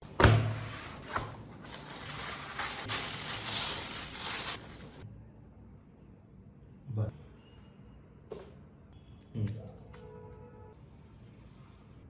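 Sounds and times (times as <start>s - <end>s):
packaging rustling and crinkling: 0.8s - 5.0s.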